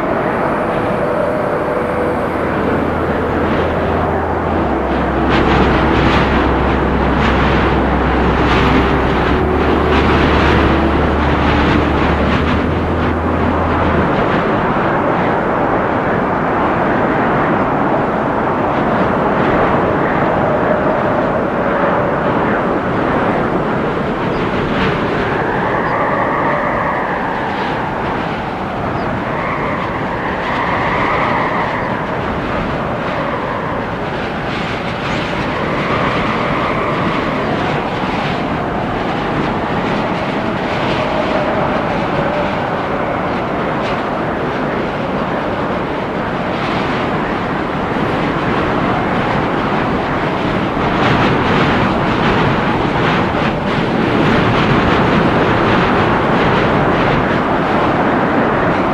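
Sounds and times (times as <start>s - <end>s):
howling storm wind: 0.0s - 58.9s.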